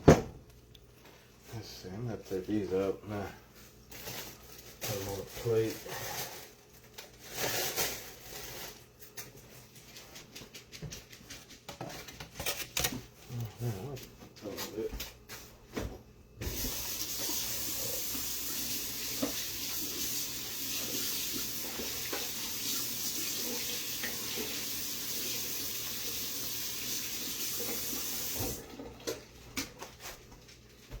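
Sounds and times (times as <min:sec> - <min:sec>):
kitchen tap running: 0:16.4 - 0:29.4.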